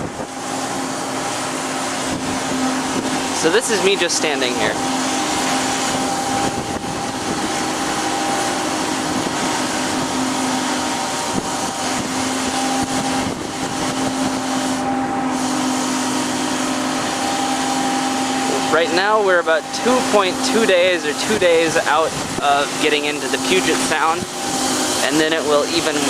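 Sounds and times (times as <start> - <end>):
ship machinery humming: 0.0 - 26.0.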